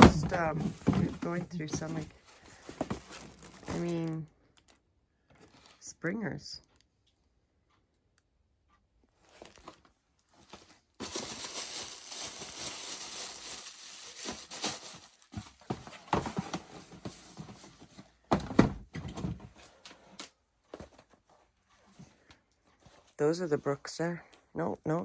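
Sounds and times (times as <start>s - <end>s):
packing material rustling: 0.0s - 4.0s, 9.2s - 18.0s.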